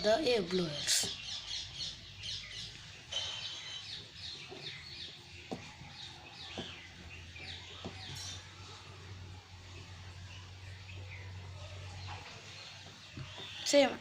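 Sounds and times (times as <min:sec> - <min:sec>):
small birds chirping: 0:00.0 - 0:14.0.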